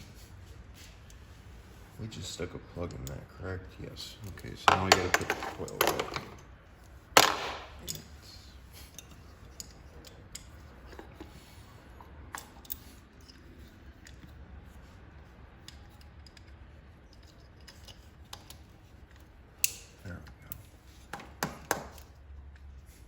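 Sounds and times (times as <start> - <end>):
hand tools clicking and tapping: 4.2 - 6.4, 7.2 - 8.2, 15.6 - 22.2.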